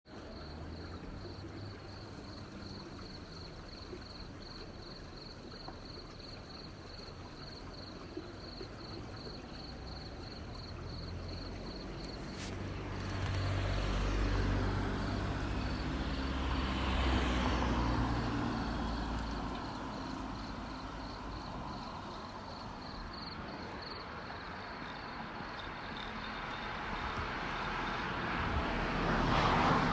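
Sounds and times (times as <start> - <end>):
motor vehicle passing: 9.9 - 23.3, 26.2 - 29.9.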